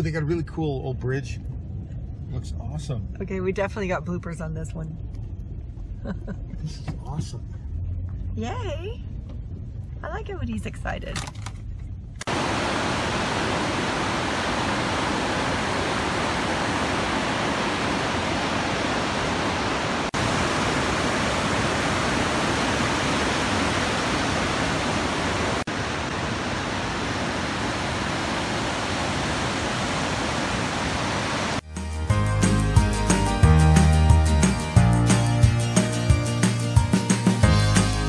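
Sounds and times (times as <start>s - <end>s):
river water rushing: 12.3s - 31.6s.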